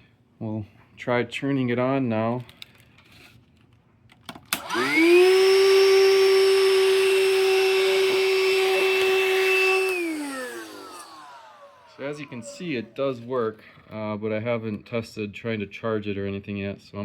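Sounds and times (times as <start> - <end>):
vacuum switch click: 4.5 - 5.5, 6.6 - 12.8
handheld vacuum motor whining: 4.5 - 13.7.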